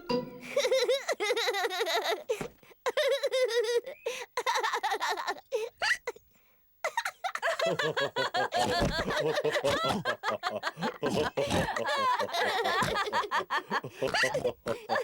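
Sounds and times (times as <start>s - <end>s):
cartoon voices laughing: 6.9s - 15.0s.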